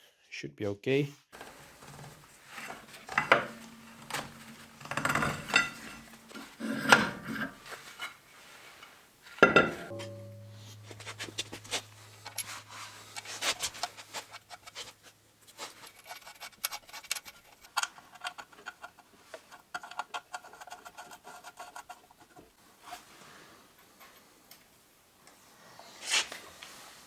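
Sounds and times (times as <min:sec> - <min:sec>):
low hum: 0:01.4 - 0:07.6, 0:09.4 - 0:15.9
tools clicking and scraping on metal: 0:01.4 - 0:08.2, 0:08.8 - 0:22.5.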